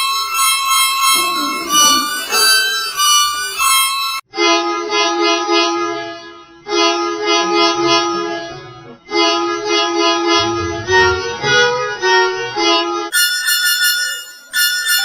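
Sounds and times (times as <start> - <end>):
electronically altered bus horn: 1.0 - 3.7.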